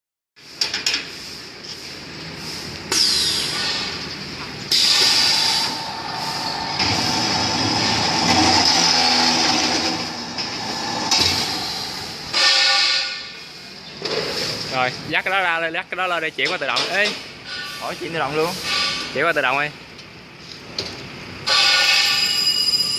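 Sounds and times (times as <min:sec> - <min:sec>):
pipe-cutting machine screeching: 0:04.6 - 0:13.3, 0:21.4 - 0:22.4
falling squeal: 0:04.7 - 0:12.7.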